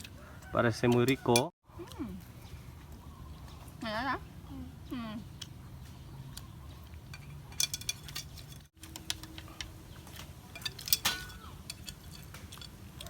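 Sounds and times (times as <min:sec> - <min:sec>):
spoons clinking on plates: 0:07.1 - 0:08.6, 0:10.5 - 0:13.0.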